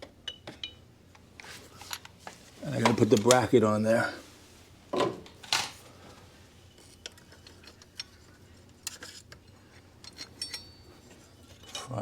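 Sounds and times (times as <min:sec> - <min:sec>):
metal tools clinking on bolts: 0:10.0 - 0:10.9.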